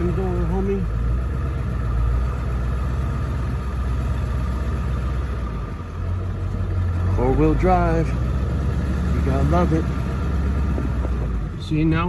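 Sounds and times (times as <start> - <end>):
truck engine low drone: 0.0 - 12.0.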